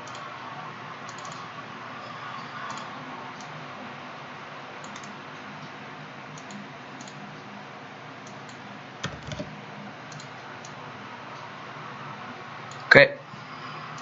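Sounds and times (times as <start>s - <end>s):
computer keyboard and mouse clicks: 0.0s - 0.2s, 1.1s - 1.5s, 2.7s - 2.9s, 4.8s - 5.2s, 6.4s - 7.2s, 8.2s - 9.5s, 10.1s - 10.8s.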